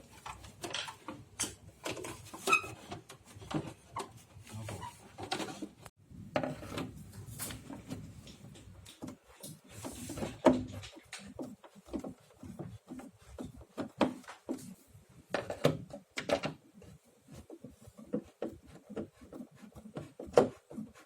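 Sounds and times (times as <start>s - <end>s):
plastic parts clicking and knocking: 0.0s - 4.2s, 5.1s - 17.0s.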